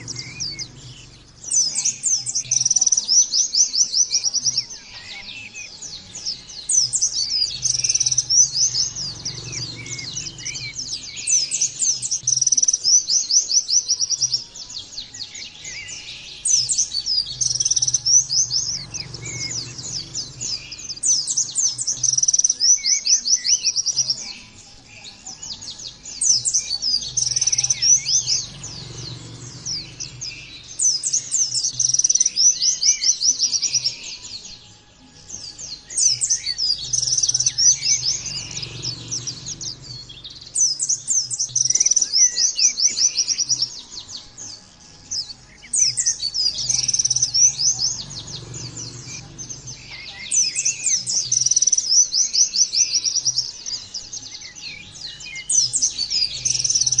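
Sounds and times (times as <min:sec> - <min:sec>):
bird chattering song: 0:00.0 - 0:57.0.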